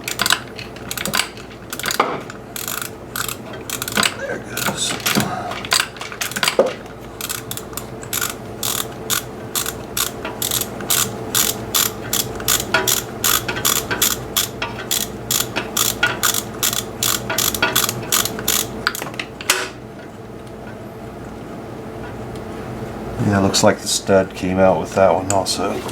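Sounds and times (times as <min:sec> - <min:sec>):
socket ratchet clicking: 0:00.0 - 0:19.0.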